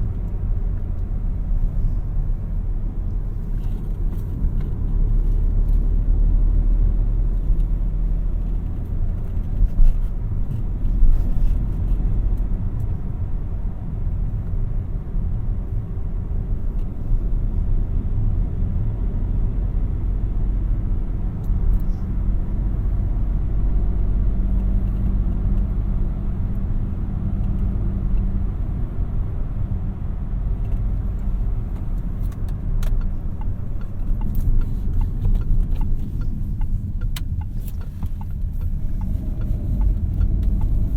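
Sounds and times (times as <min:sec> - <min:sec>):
road and tyre rumble: 0:00.0 - 0:40.9
car engine running: 0:19.9 - 0:40.9.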